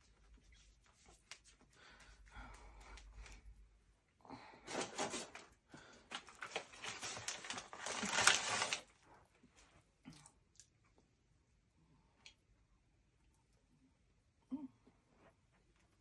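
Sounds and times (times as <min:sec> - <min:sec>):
rustling: 0:06.1 - 0:09.0.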